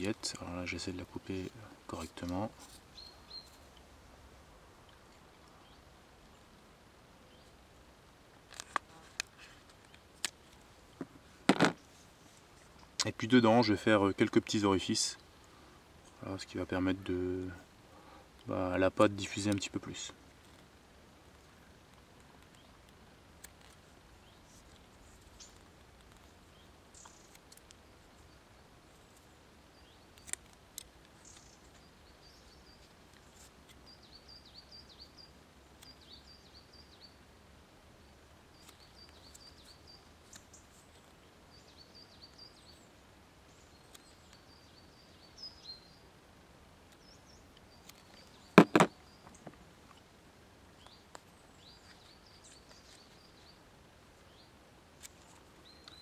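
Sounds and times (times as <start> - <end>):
small bird chirping: 2.9 - 3.7, 31.2 - 37.2, 38.5 - 46.1, 50.8 - 53.6, 54.2 - 56.0.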